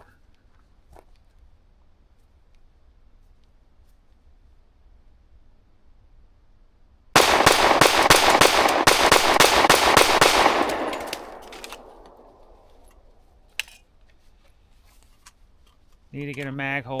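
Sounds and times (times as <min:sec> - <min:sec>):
pistol rapid fire: 0:07.2 - 0:12.9
sharp clicks: 0:07.2 - 0:13.0.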